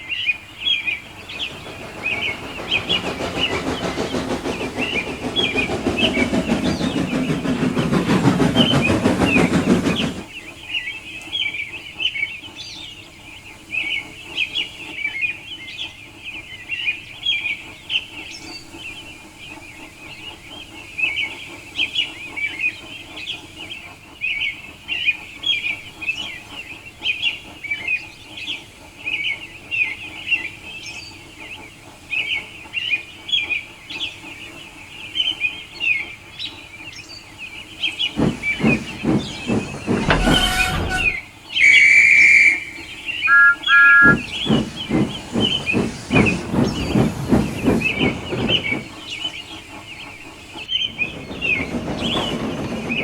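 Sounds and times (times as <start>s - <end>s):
steam locomotive running: 0.0s - 53.0s
birds chirping: 0.4s - 10.5s, 37.9s - 53.0s.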